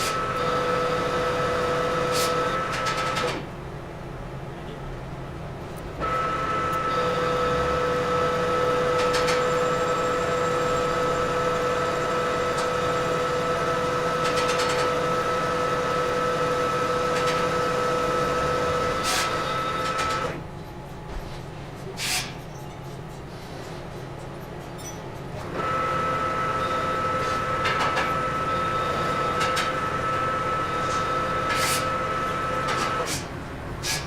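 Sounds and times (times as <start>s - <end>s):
metal lathe whining: 6.0s - 20.2s.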